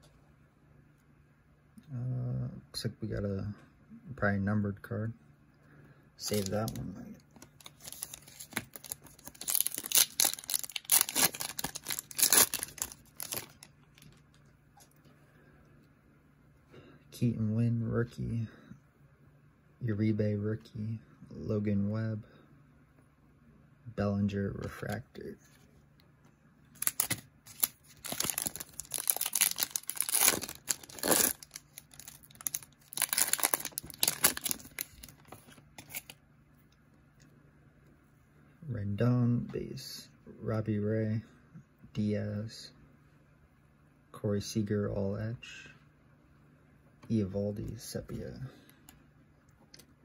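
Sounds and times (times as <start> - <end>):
wrapper tearing and crinkling: 6.2 - 14.2, 26.8 - 36.2.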